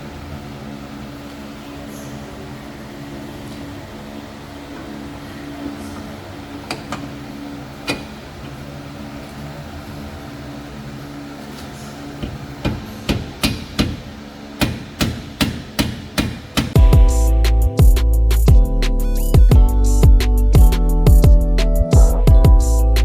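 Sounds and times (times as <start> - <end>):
steady mechanical hum: 0.0 - 23.0
hammer striking metal parts: 12.2 - 16.8.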